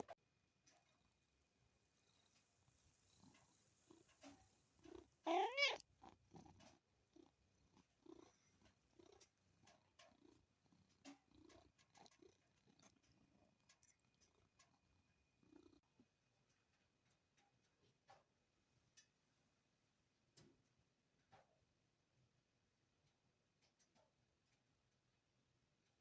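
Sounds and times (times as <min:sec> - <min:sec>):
cat purring: 0:00.0 - 0:18.4
cat squeaky yawn: 0:05.3 - 0:05.8.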